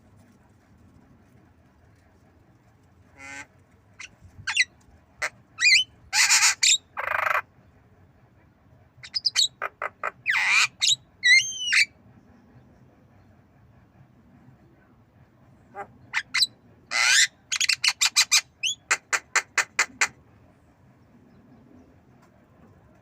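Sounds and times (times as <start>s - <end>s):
bird clicking squawking and whistling: 5.6s - 7.4s, 9.0s - 11.9s.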